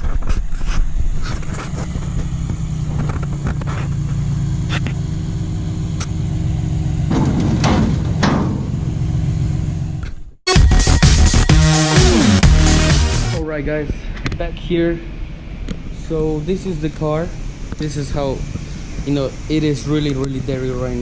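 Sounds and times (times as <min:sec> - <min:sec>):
vehicle engine running: 0:00.0 - 0:10.4, 0:11.0 - 0:13.4.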